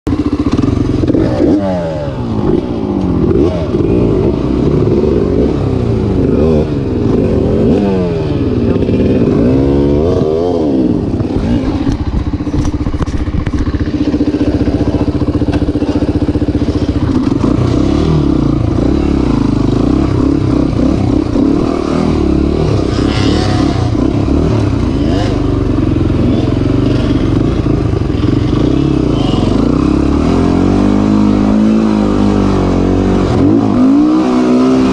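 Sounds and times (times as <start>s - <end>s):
atv engine revving: 0.1s - 34.9s.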